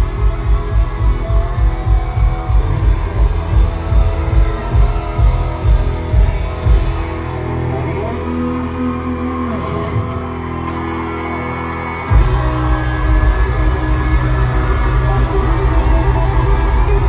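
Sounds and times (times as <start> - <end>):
heavy drum beat: 0.0 - 7.4, 12.1 - 17.0
pop-rock band playing live: 0.0 - 17.0.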